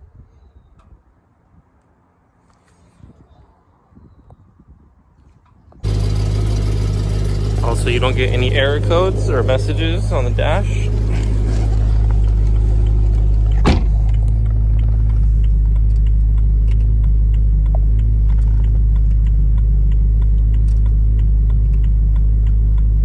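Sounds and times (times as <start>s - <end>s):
car engine idling: 5.8s - 23.0s.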